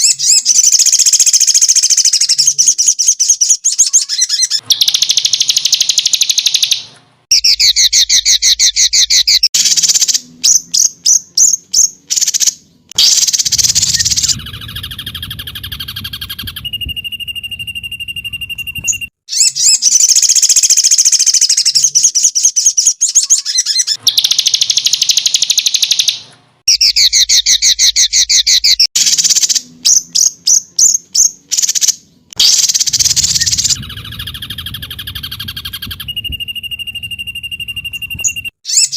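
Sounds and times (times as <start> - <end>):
songbird trills and chirps: 0.0 - 38.9
steady whistle-like tone: 13.0 - 19.1, 32.4 - 38.6.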